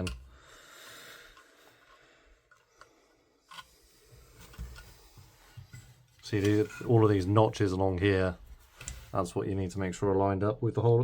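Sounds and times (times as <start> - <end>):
metal gun parts clicking: 3.5 - 3.8.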